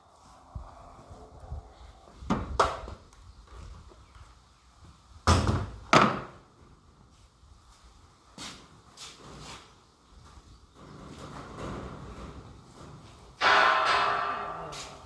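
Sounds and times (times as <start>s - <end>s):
heavy knocks of steel parts: 13.4s - 15.0s.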